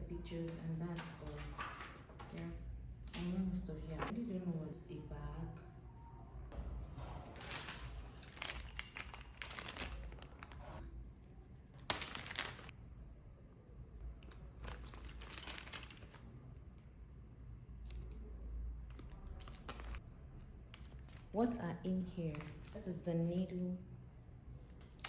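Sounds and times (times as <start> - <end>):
plastic packaging crinkling: 7.4 - 10.8, 11.8 - 12.7, 14.4 - 16.3, 18.9 - 20.0, 22.2 - 22.8.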